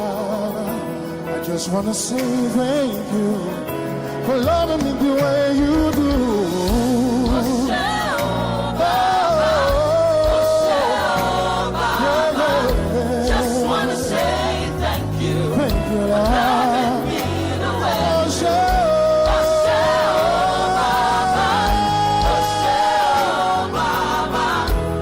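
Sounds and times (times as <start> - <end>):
regular low drum beat: 4.4 - 25.0
sustained bass: 4.5 - 25.0
singers holding long notes: 6.4 - 25.0.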